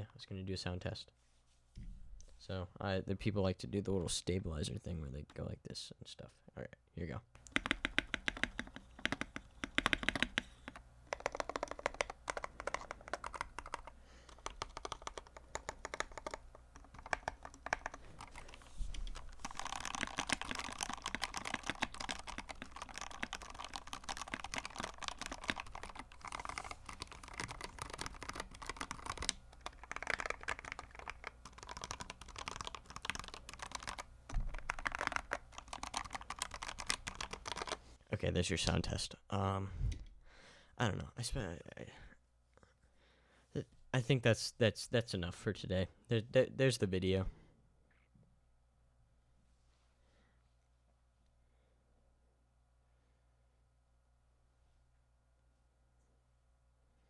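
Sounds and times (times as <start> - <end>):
mechanical keyboard typing: 7.4 - 37.8.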